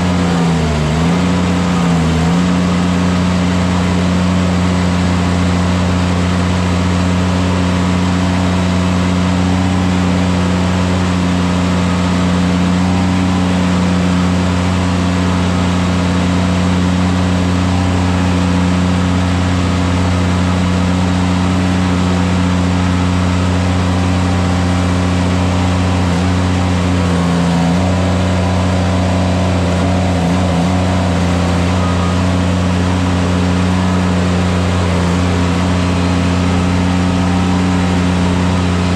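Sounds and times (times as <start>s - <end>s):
engine running steadily: 0.0s - 38.9s.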